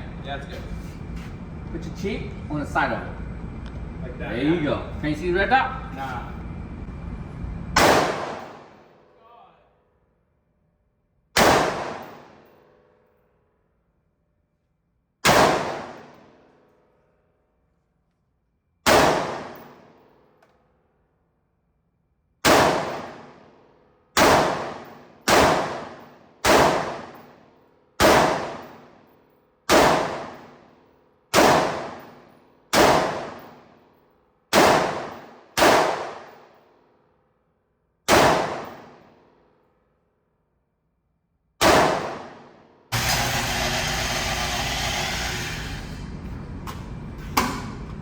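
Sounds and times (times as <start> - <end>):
rifle shots: 7.8 - 8.8, 11.4 - 12.5, 15.2 - 16.4, 18.8 - 20.0, 22.4 - 23.5, 24.2 - 27.4, 28.0 - 29.0, 29.7 - 30.7, 31.3 - 33.8, 34.5 - 36.6, 38.1 - 39.1, 41.6 - 44.8.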